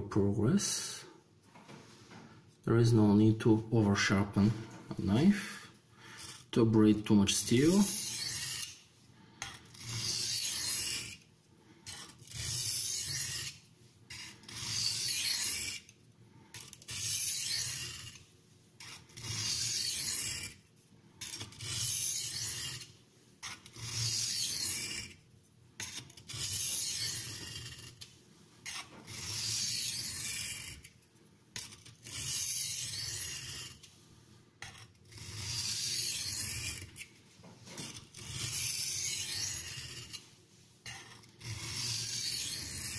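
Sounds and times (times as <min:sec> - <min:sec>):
knife scraping on sharpening stone: 0:07.5 - 0:08.8, 0:09.4 - 0:11.3, 0:11.9 - 0:20.6, 0:21.2 - 0:25.2, 0:25.8 - 0:31.0, 0:31.6 - 0:34.0, 0:34.6 - 0:37.1, 0:37.8 - 0:42.9.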